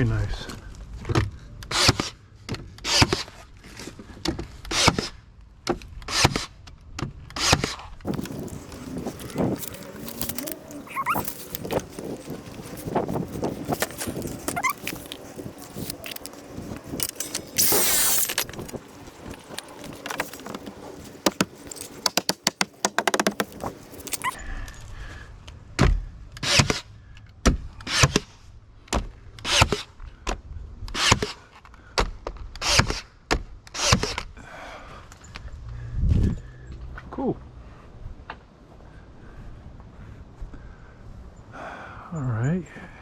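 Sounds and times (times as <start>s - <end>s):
clatter and clicks: 8.1s - 24.4s
knocks on wood: 21.2s - 23.5s.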